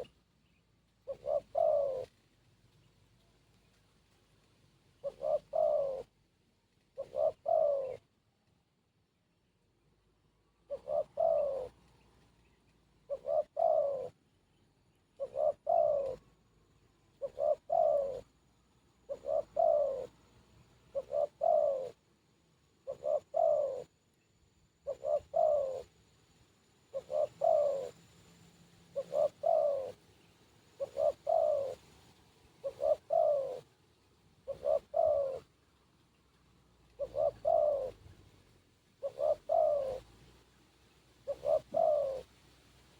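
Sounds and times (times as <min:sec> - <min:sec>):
dove cooing: 0:01.0 - 0:02.2, 0:05.0 - 0:06.2, 0:06.9 - 0:08.1, 0:10.6 - 0:12.0, 0:13.0 - 0:14.3, 0:15.1 - 0:16.4, 0:17.0 - 0:18.4, 0:19.0 - 0:22.1, 0:22.8 - 0:24.0, 0:24.8 - 0:26.0, 0:26.8 - 0:33.8, 0:34.4 - 0:35.6, 0:36.8 - 0:40.5, 0:41.2 - 0:42.4.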